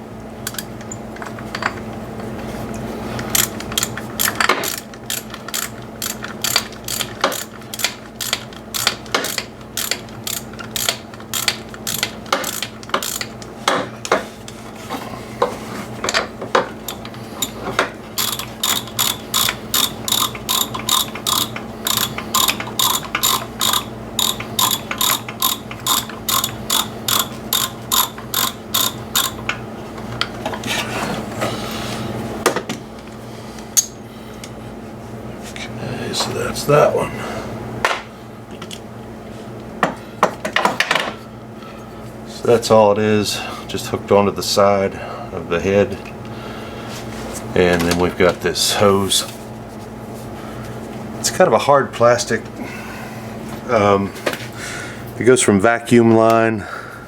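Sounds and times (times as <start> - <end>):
socket ratchet clicking: 3.4 - 13.4, 18.2 - 29.5.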